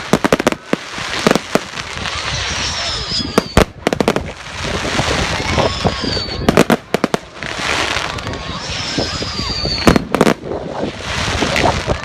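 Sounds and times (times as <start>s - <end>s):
fireworks bangs and crackles: 0.0s - 12.0s
firework whistle sliding down: 5.4s - 6.8s, 8.6s - 10.4s.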